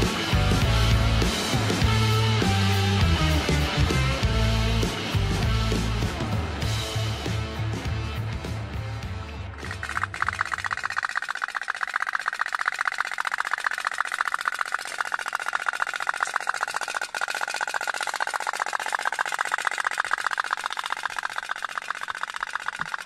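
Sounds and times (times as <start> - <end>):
toy steam boat popping: 9.6 - 23.0.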